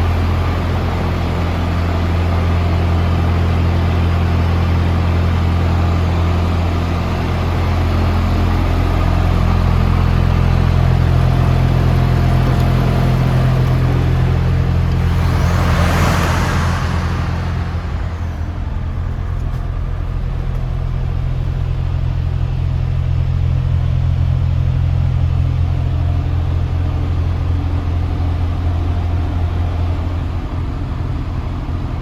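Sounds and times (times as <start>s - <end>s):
diesel lorry engine running: 0.0s - 32.0s.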